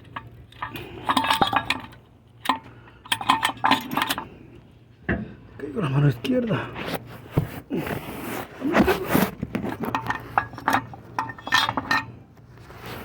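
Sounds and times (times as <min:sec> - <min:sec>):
metal parts clinking and clicking: 0:00.0 - 0:04.3, 0:09.9 - 0:12.2.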